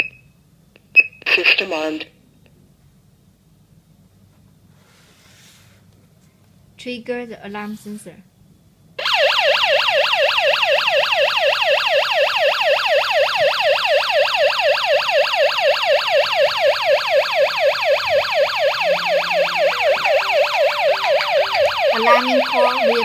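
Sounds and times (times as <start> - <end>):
burglar alarm siren wailing: 9.0 - 23.0.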